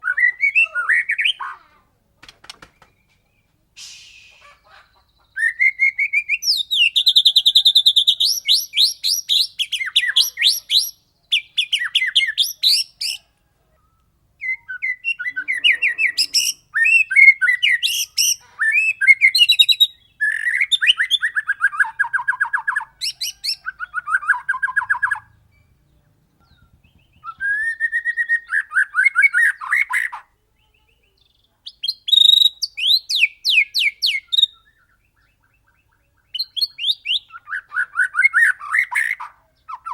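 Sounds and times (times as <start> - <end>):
bird singing: 0.0 - 1.5, 2.6 - 39.9.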